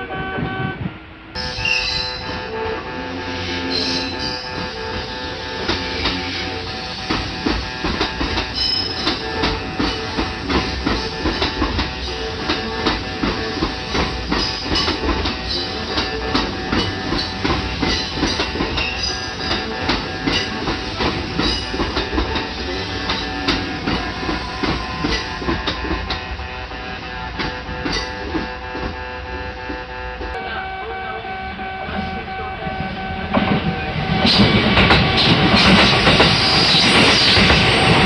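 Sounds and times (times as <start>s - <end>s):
train rumble: 0.0s - 38.0s
train wheels clicking over rail joints: 3.9s - 26.3s, 33.3s - 38.0s.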